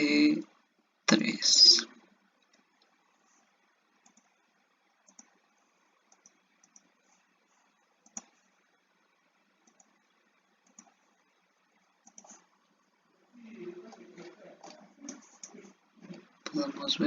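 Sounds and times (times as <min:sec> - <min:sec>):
computer mouse clicks: 0:04.0 - 0:07.3, 0:08.0 - 0:08.6, 0:09.6 - 0:10.0, 0:10.6 - 0:11.0, 0:12.0 - 0:12.6.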